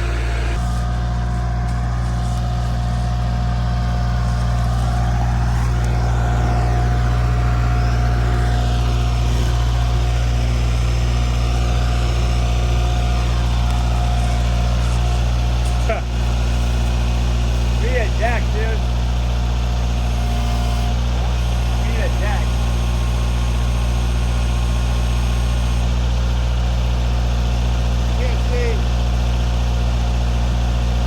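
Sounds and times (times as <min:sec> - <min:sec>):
faint whine: 0:00.0 - 0:17.9
tractor engine idling: 0:00.0 - 0:31.0.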